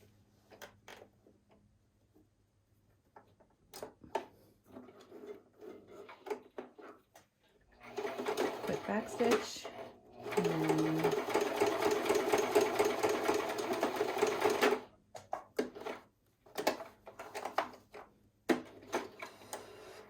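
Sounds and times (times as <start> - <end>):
sewing machine stitching: 7.8 - 14.9.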